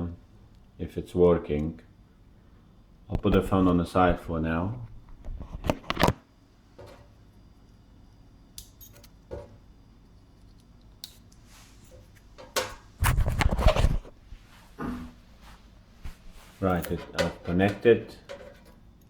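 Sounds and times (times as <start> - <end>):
clattering and rustling: 6.8 - 7.1, 11.8 - 18.9.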